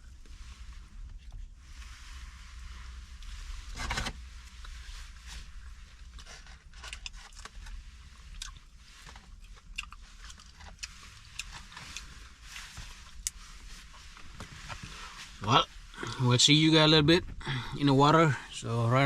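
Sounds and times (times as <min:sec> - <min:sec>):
person chewing food: 0:08.3 - 0:13.4.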